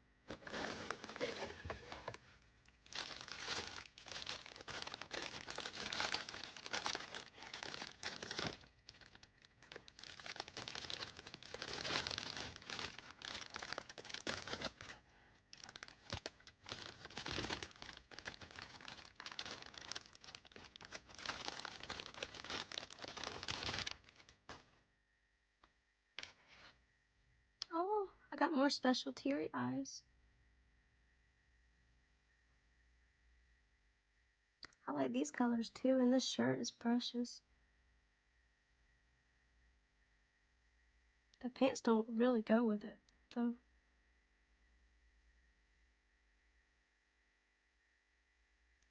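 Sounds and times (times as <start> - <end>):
packaging crinkling and tearing: 0.3 - 24.7.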